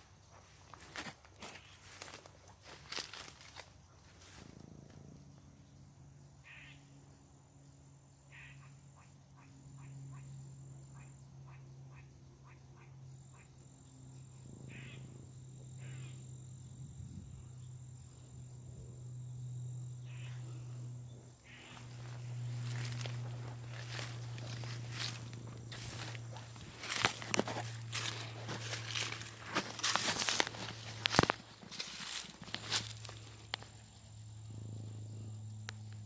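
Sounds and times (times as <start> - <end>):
steady low hum: 0.0 - 36.0
animal calls: 20.0 - 20.8.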